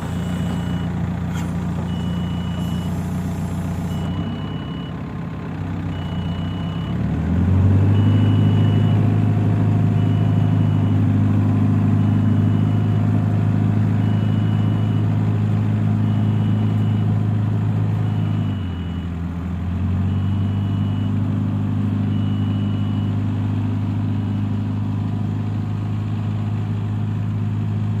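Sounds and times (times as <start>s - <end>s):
reversing alarm beeps: 0.0s - 1.0s, 1.8s - 5.0s, 5.9s - 7.0s, 7.9s - 9.1s, 9.9s - 11.1s, 11.9s - 13.1s, 14.0s - 15.2s, 16.0s - 17.2s, 18.0s - 19.1s, 20.0s - 21.2s, 22.1s - 23.3s
diesel engine running under load: 0.0s - 28.0s.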